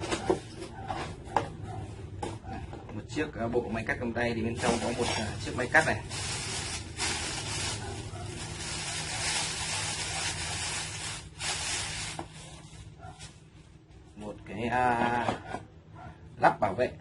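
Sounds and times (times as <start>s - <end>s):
packaging rustling: 4.6s - 13.4s.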